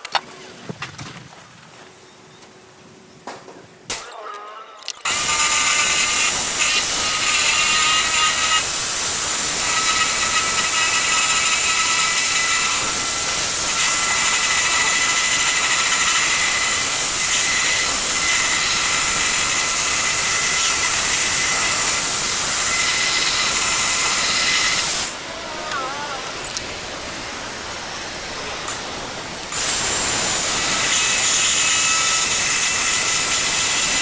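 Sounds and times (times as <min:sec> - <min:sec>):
power tool whining: 0:03.9 - 0:25.2, 0:29.5 - 0:34.0.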